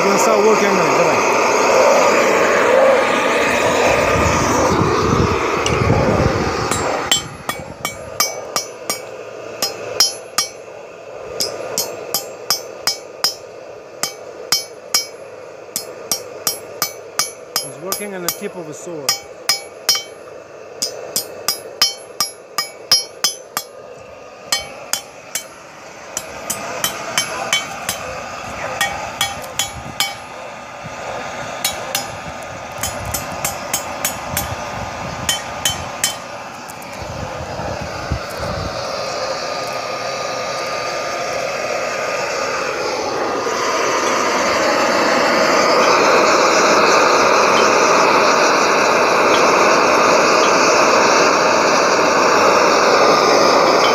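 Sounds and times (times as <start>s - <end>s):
forge burner roaring: 0.0s - 53.9s
hammer ringing on hot steel: 5.6s - 5.8s, 6.6s - 10.7s, 11.3s - 23.8s, 24.5s - 30.4s, 31.6s - 34.7s, 35.3s - 36.3s, 45.8s - 50.7s.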